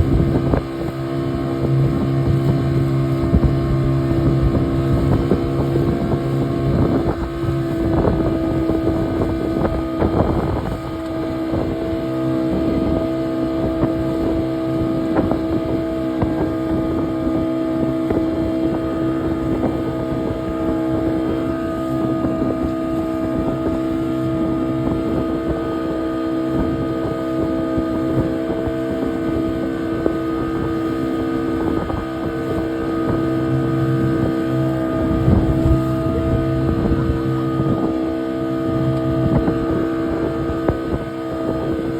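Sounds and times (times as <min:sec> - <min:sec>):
boat engine droning: 0:00.0 - 0:41.9
wind on microphone: 0:00.0 - 0:41.9.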